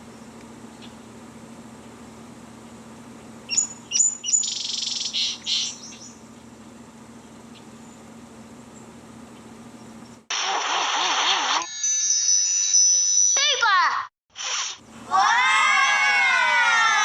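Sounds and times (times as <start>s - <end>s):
steady low hum: 0.0s - 10.3s
bird chirps and trill: 3.5s - 6.2s.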